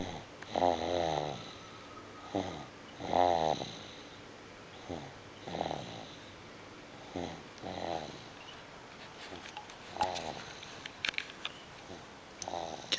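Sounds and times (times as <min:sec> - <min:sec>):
rasping snores: 0:00.0 - 0:01.6, 0:02.3 - 0:03.9, 0:04.8 - 0:06.2, 0:07.0 - 0:08.3, 0:12.4 - 0:12.9.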